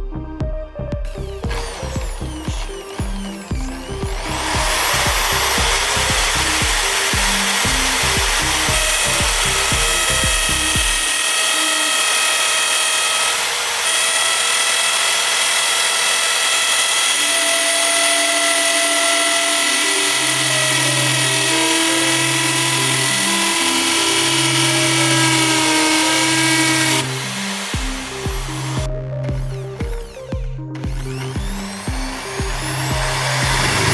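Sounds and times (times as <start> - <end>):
background music with a beat: 0.0 - 11.3, 19.1 - 33.9
electric drill whining and grinding: 0.0 - 33.9.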